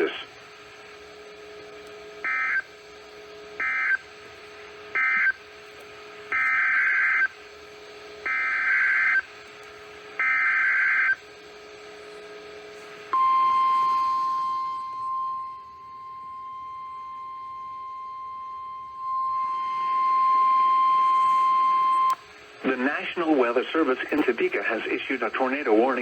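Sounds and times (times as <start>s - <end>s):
steady warning alarm tone: 0.0s - 26.0s
harsh buzzy data bursts: 18.2s - 26.0s.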